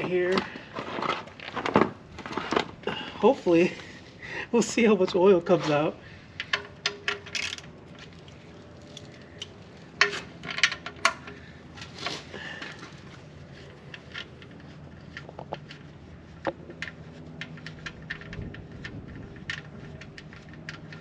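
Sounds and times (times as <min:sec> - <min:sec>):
wrench clicking and clinking: 0:06.4 - 0:07.7.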